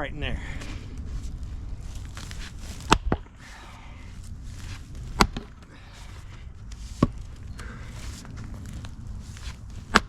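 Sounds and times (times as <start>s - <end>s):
splitting maul striking wood: 5.1s - 5.6s.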